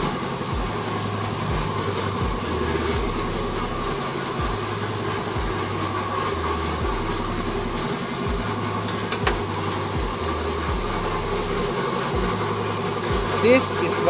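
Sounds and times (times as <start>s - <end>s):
mechanical hum with low rumble: 0.0s - 14.0s
metallic clink: 8.9s - 10.3s.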